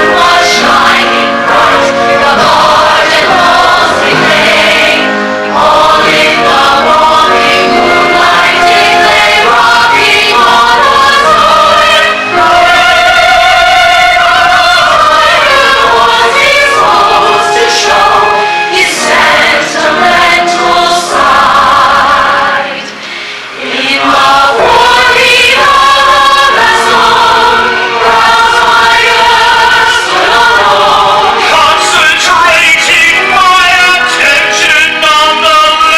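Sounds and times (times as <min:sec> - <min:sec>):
musical accompaniment: 0:00.0 - 0:35.9
voices singing together: 0:00.0 - 0:35.9.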